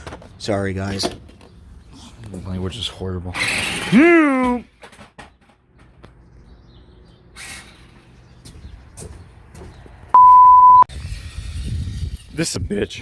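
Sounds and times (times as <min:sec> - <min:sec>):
censor bleep: 0:10.2 - 0:10.9.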